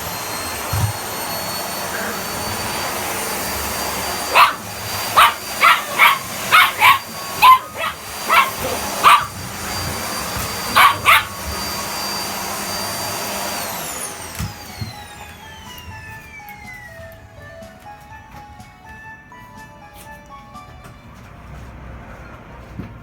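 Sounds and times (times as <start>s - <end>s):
vacuum cleaner whining: 0.0s - 19.8s
puppy barking: 3.8s - 11.9s.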